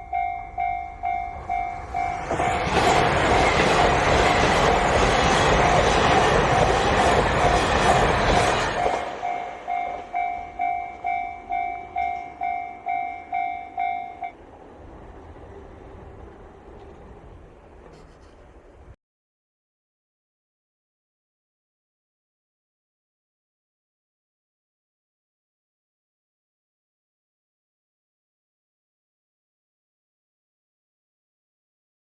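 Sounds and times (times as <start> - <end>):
railroad crossing bell: 0.0 - 14.4
diesel train rushing past: 0.1 - 19.0.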